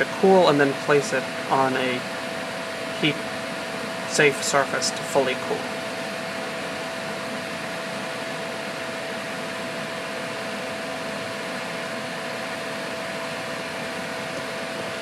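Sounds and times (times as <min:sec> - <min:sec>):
electric fan whirring: 0:00.0 - 0:15.0.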